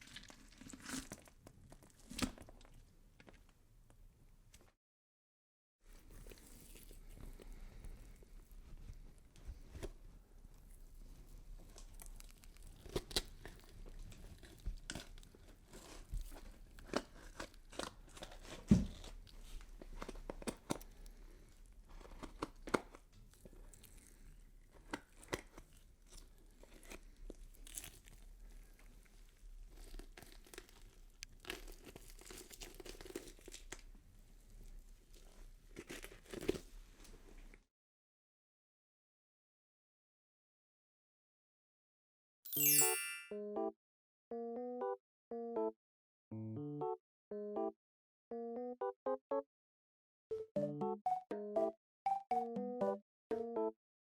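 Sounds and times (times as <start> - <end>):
crackling crunching and snapping: 11.6 - 21.2, 29.7 - 33.9.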